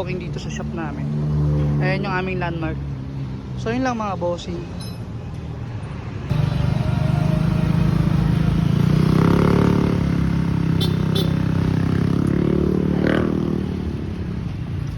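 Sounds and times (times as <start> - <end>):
motorcycle engine running: 6.3 - 13.6.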